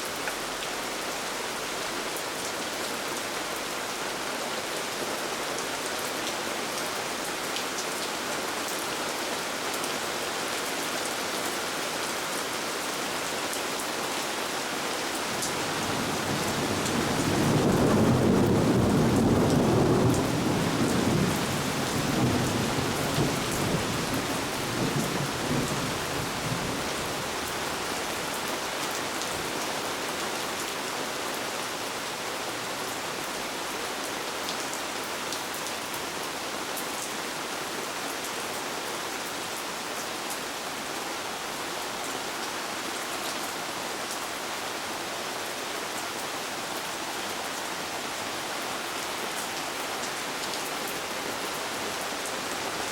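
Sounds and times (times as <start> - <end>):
steady rain: 0.0 - 52.9
deep rumble of thunder: 16.1 - 26.8.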